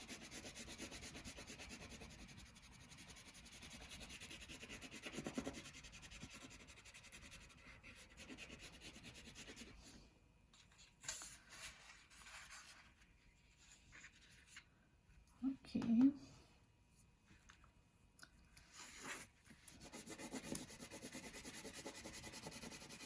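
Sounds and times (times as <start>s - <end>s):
coloring strokes scratching paper: 0.0s - 10.0s, 18.7s - 23.0s.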